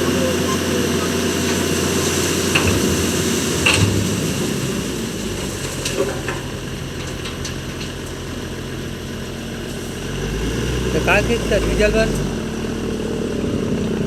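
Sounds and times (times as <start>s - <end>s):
diesel truck engine humming: 0.0s - 14.0s
metal clanks: 5.4s - 8.3s.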